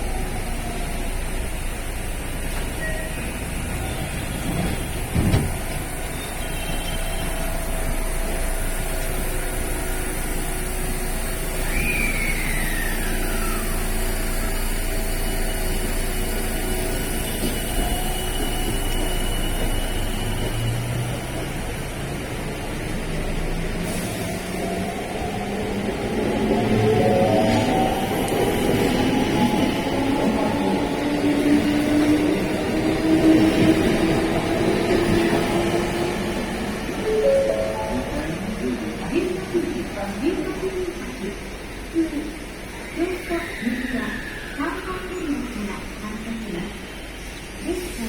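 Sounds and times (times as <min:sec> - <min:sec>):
electric train hum and rumble: 0:00.0 - 0:48.0
short falling squeal: 0:11.5 - 0:15.8.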